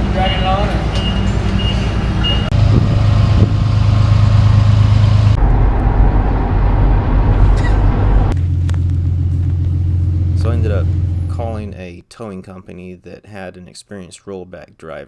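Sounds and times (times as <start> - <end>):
truck engine running: 0.0 - 11.6.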